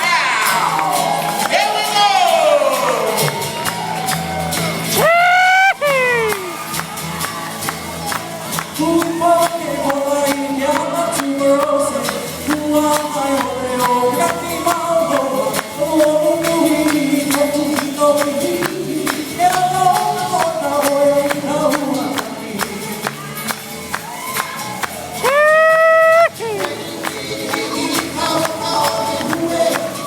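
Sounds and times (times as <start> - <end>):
man singing: 0.0 - 3.4, 5.0 - 6.6, 8.6 - 23.4, 25.2 - 30.0.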